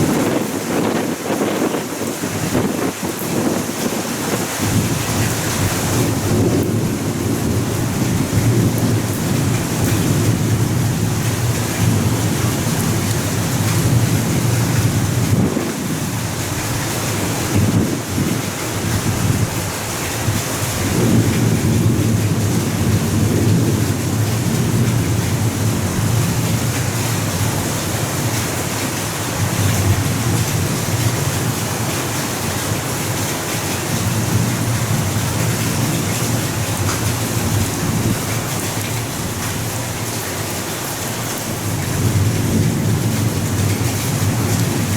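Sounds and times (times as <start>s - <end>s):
rolling thunder: 0.0s - 28.8s, 41.6s - 44.9s
heavy rain hissing: 0.0s - 44.9s.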